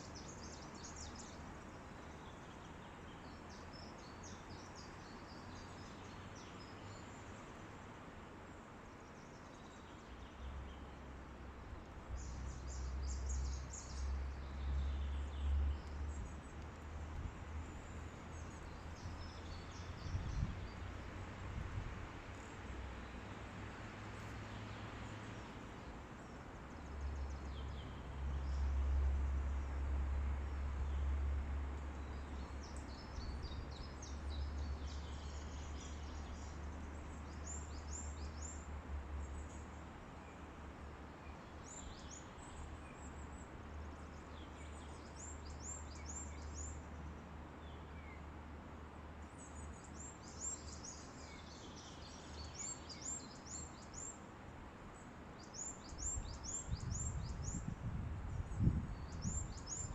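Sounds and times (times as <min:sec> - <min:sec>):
small birds singing: 0:00.0 - 0:07.6, 0:08.8 - 0:11.0, 0:11.9 - 0:21.0, 0:23.8 - 0:48.3, 0:49.1 - 0:59.9
wind through forest: 0:00.0 - 0:59.9
wind rumble on microphone: 0:18.8 - 0:22.2, 0:55.8 - 0:59.9.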